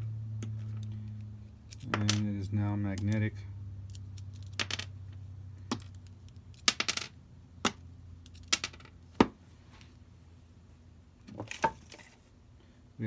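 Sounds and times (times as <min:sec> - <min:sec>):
metal screws clinking: 0:01.6 - 0:02.3.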